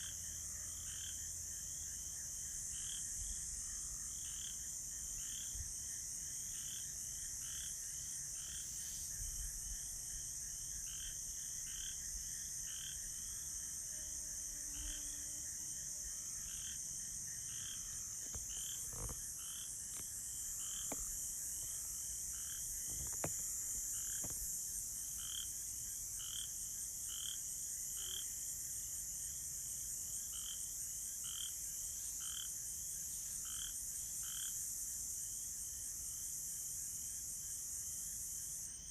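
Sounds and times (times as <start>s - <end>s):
cricket trill: 0.0s - 38.9s
frogs calling: 16.4s - 24.4s.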